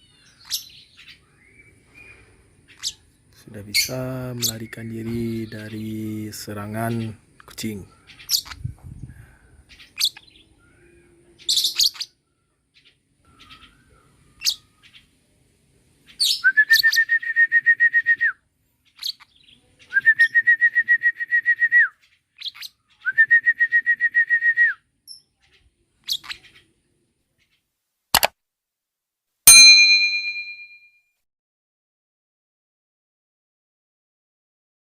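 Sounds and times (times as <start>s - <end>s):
lovebird chirping: 0.0s - 3.1s, 3.7s - 15.1s, 18.8s - 20.3s, 21.9s - 23.2s, 25.0s - 26.8s
bell-like ding: 29.5s - 31.0s.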